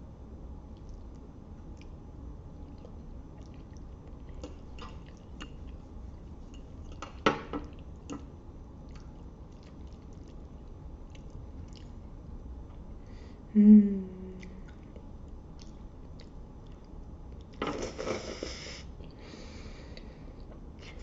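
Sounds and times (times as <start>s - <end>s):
spaghetti being chewed: 0.6s - 12.3s, 14.3s - 19.3s.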